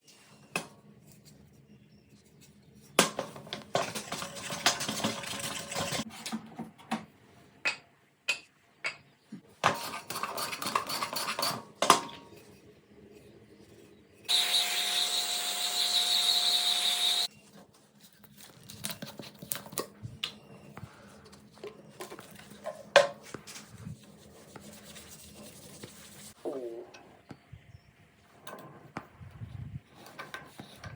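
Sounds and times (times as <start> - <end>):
small power tool whining: 14.3 - 17.3.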